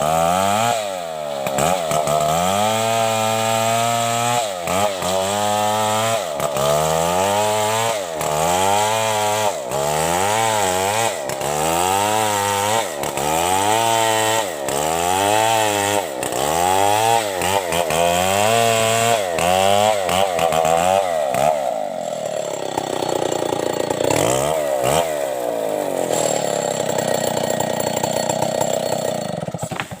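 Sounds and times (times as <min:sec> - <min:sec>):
chainsaw cutting wood: 0:00.0 - 0:30.0.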